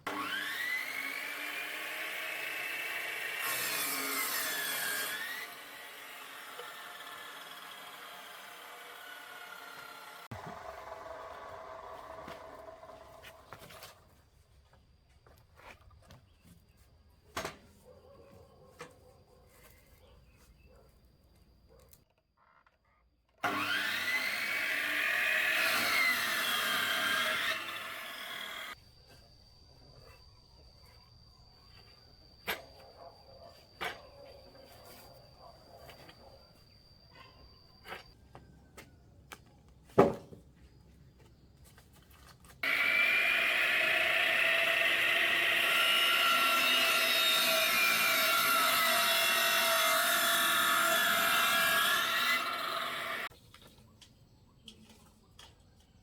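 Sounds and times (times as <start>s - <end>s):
power saw cutting wood: 0.0s - 13.8s, 23.4s - 28.8s, 42.6s - 53.3s.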